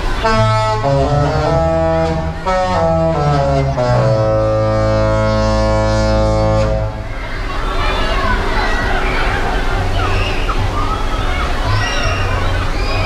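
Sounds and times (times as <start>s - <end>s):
ship horn playing a tune: 0.2s - 7.1s.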